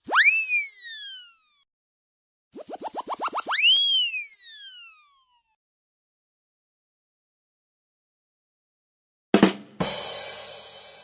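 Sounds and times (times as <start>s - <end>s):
cartoon whistle pitch glide: 0.0s - 1.6s, 2.6s - 5.6s.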